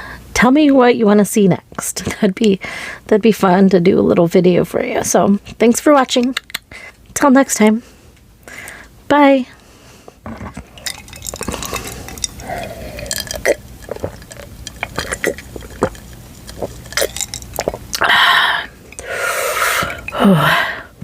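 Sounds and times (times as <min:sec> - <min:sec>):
person burping loudly: 0:10.2 - 0:16.0, 0:16.6 - 0:20.9.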